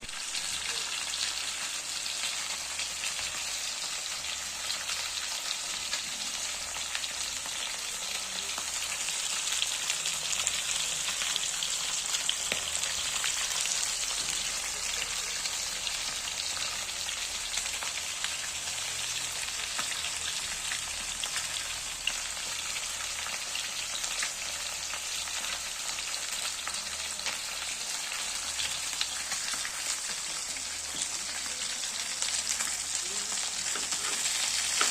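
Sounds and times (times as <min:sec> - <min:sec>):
fish frying in hot oil: 0:00.0 - 0:34.9.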